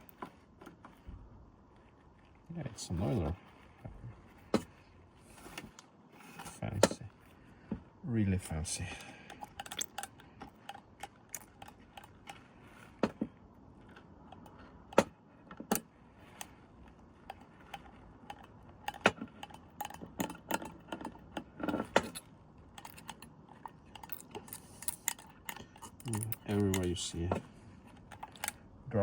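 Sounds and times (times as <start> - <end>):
small metallic clicks and taps: 8.4 - 28.6.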